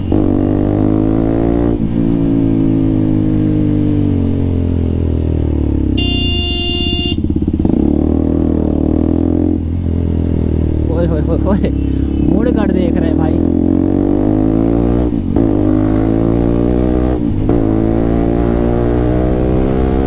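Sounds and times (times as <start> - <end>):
motorcycle engine with loud exhaust: 0.0 - 20.0
vehicle horn: 6.0 - 7.4.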